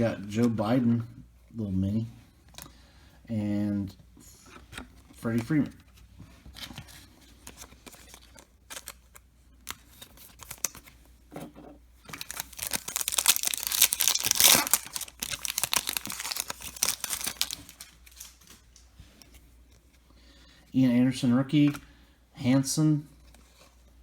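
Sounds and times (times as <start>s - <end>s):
foil wrapper crinkling: 7.5s - 10.9s, 12.1s - 18.8s.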